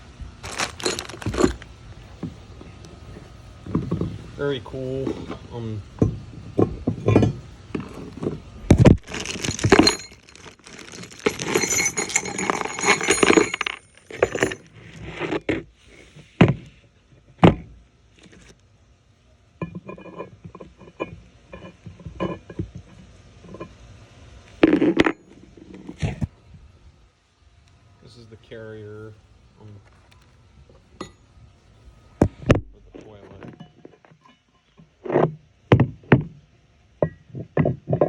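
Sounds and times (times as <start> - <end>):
metal parts clinking and clattering: 0.4 - 1.6, 6.9 - 15.4.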